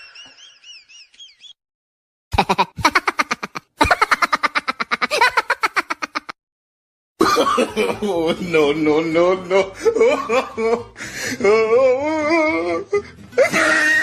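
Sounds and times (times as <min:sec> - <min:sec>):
lower wavering laugh: 0:13.4 - 0:14.0.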